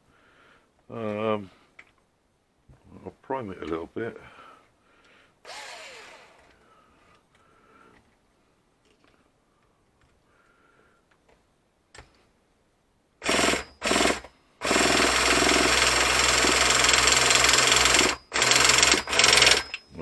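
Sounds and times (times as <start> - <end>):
electric starter spinning engine: 5.5 - 6.5, 13.2 - 19.8.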